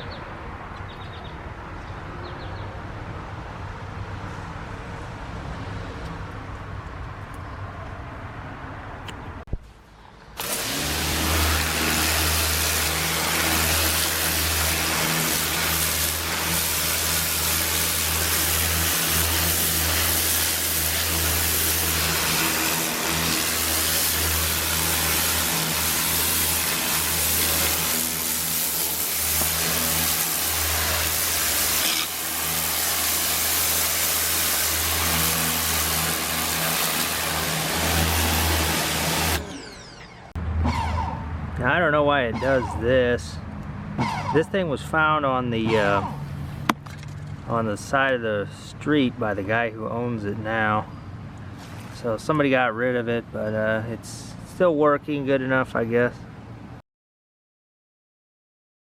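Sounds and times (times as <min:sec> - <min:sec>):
pressure washer motor hum: 0:10.3 - 0:40.4
water jet hissing: 0:10.4 - 0:39.6.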